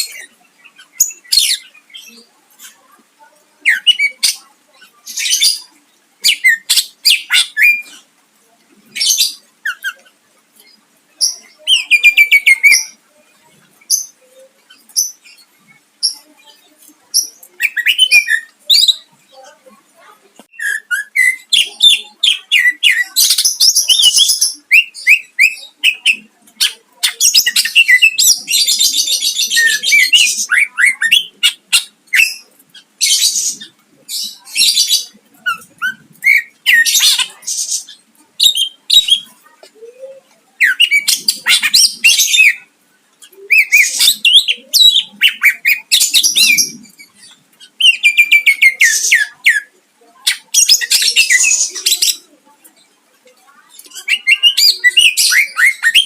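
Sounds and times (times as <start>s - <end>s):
bird singing rapid chirps and trills: 13.8s - 19.5s, 20.5s - 56.0s.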